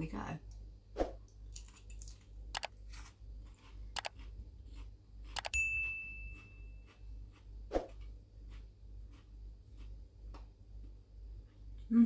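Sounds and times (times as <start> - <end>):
bowl ringing: 5.6 - 6.8.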